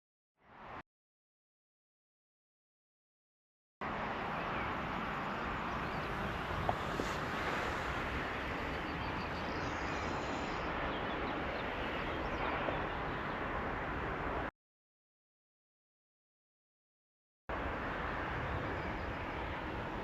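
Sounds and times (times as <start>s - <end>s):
outdoor background noise: 3.8s - 14.5s, 17.5s - 20.0s.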